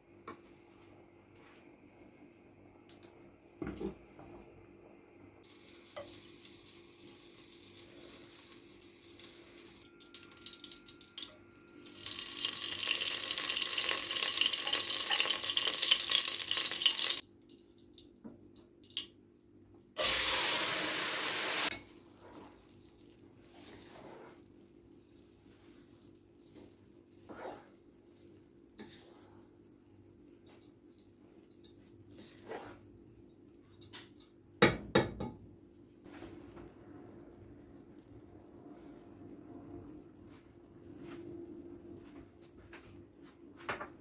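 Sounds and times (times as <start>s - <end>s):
water running from kitchen tap: 5.4s - 17.2s, 20.0s - 21.8s.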